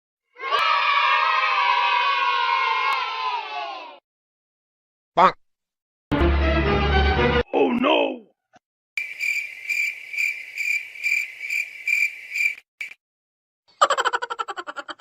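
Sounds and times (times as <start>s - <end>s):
cricket chirping: 9.0s - 13.0s.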